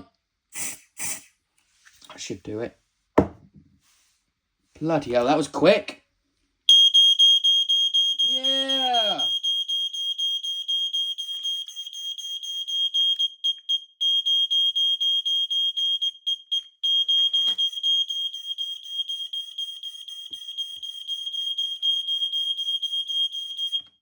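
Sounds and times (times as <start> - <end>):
short knock: 3.2 - 3.5
smoke alarm pulsing tone: 6.7 - 24.0.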